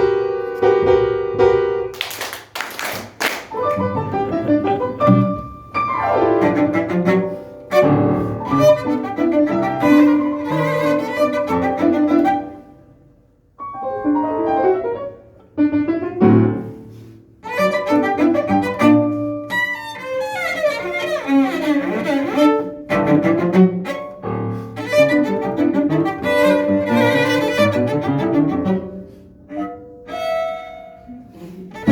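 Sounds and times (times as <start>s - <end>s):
piano: 0.0s - 31.9s
cello: 3.6s - 13.0s, 13.6s - 31.9s.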